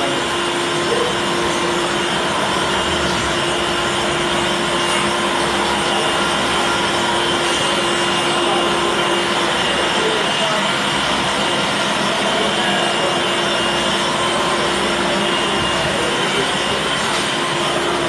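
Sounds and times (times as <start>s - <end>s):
machine hum and whoosh: 0.2s - 9.8s.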